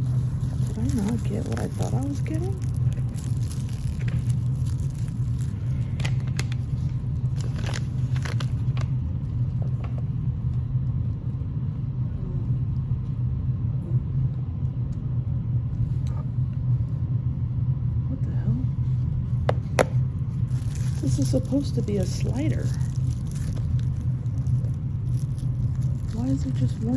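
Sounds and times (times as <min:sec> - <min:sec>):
packaging crinkling and clicking: 0:00.0 - 0:09.0, 0:19.5 - 0:26.9
low rumble: 0:00.0 - 0:26.9.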